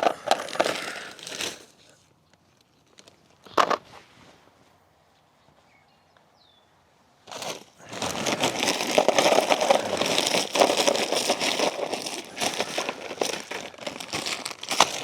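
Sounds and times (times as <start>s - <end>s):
plastic bag crinkling: 0.0s - 1.9s, 7.3s - 15.0s
frozen fruit crunching: 0.0s - 3.6s, 7.3s - 15.0s.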